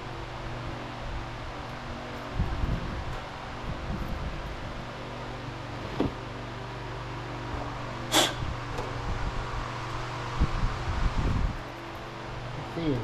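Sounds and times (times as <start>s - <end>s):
low mechanical hum: 0.0s - 13.0s
sharp hissing burst: 8.1s - 8.5s.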